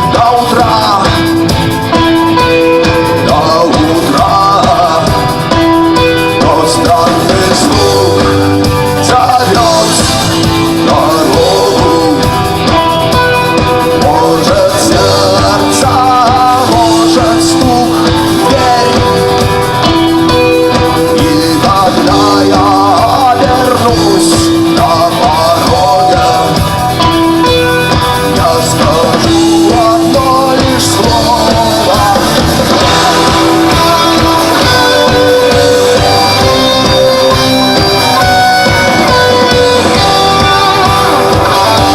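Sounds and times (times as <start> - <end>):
rock music with guitars and drums: 0.0 - 41.9.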